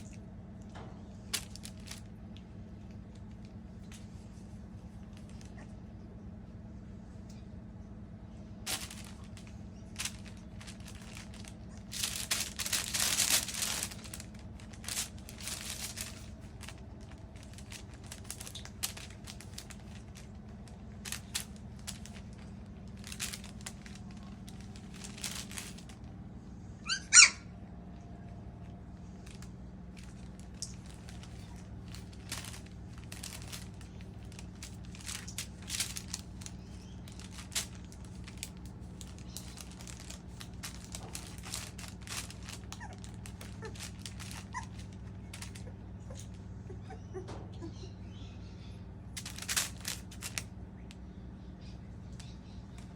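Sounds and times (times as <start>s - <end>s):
baking paper crinkling: 0.0s - 5.8s, 8.4s - 26.4s, 28.5s - 46.4s, 49.1s - 50.6s
puppy squeak: 26.7s - 27.5s, 42.7s - 48.2s.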